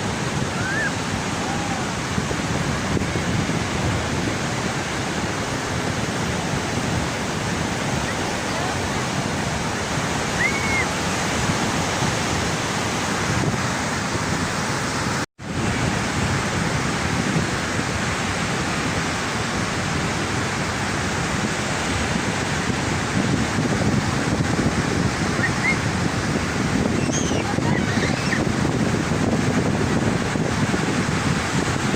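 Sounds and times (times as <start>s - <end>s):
sea waves breaking on beach: 0.0s - 31.9s.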